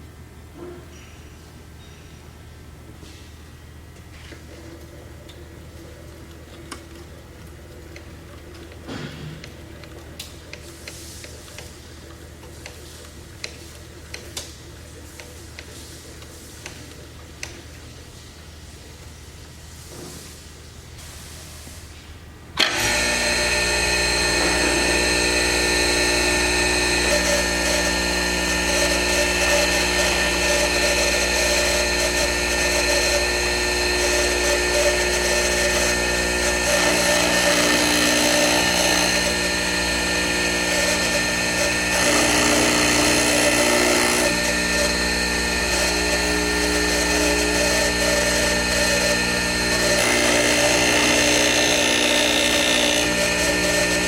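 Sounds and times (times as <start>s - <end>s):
grinder spindle motor humming: 22.6s - 54.0s.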